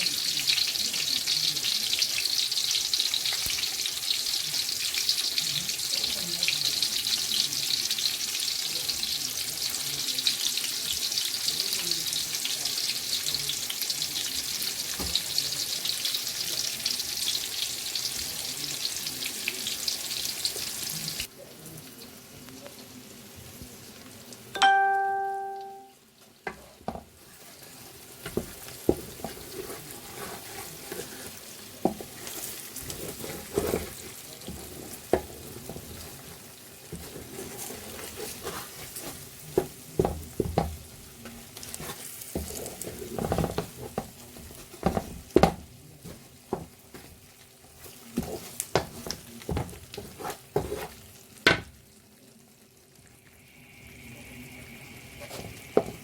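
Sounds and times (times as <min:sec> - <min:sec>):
food sizzling in oil: 0:00.0 - 0:56.0
spoon scraping and knocking pot: 0:48.2 - 0:51.7, 0:55.2 - 0:56.0.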